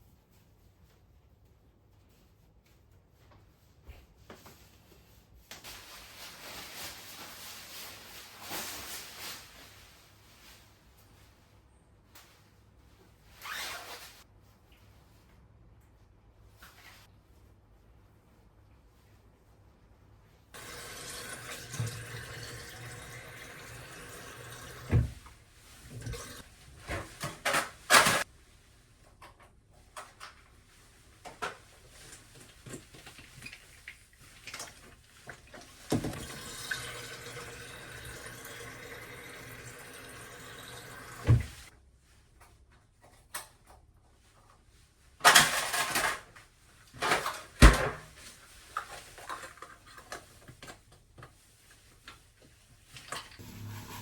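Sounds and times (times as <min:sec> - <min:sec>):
water running from a tap: 0:20.6 - 0:25.2, 0:25.9 - 0:26.4, 0:33.2 - 0:41.7.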